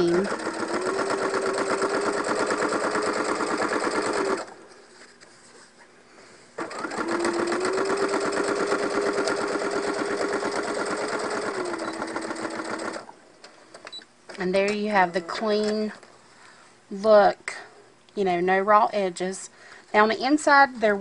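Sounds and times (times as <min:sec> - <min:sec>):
sewing machine stitching: 0:00.0 - 0:04.6, 0:06.6 - 0:13.1.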